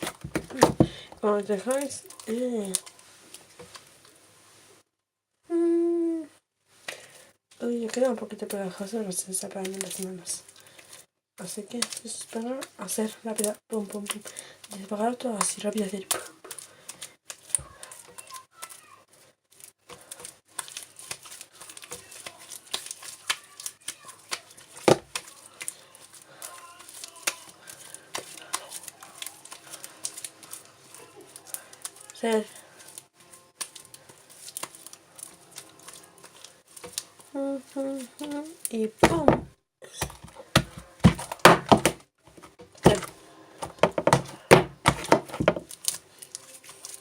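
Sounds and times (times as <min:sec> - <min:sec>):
slime kneaded by hand: 0:11.5 - 0:47.0.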